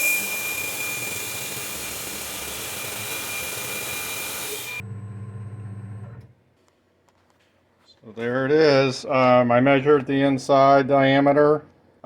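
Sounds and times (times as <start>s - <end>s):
workshop machine rushing and whining: 0.0s - 6.3s.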